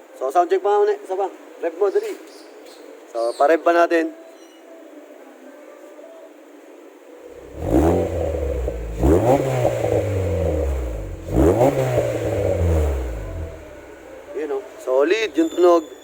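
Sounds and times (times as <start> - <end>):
car engine idling and revving: 7.3 - 14.9.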